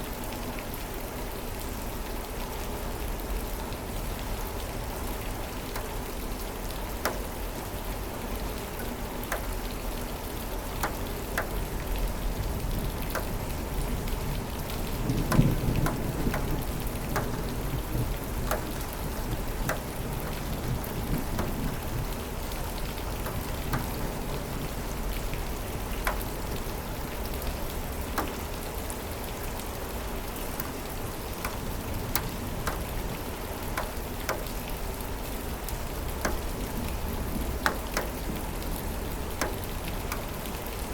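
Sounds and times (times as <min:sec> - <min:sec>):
steady rain: 0:00.0 - 0:40.9
low rumble of thunder: 0:12.4 - 0:25.3.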